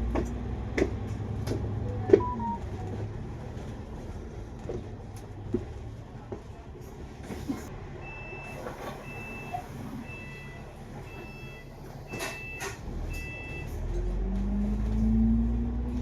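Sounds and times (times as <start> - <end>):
bus engine rumble: 0.0 - 16.0
electronic warning beeper: 1.9 - 2.6.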